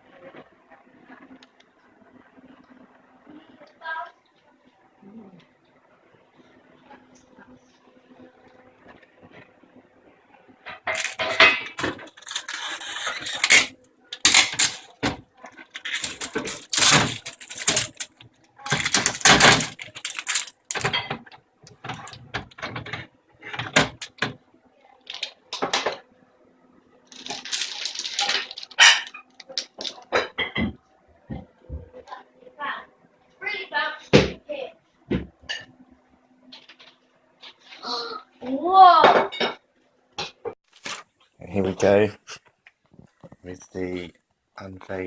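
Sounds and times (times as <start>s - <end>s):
packaging crinkling and scraping: 10.9s - 15.0s, 15.6s - 21.1s, 27.1s - 30.0s, 40.7s - 41.2s.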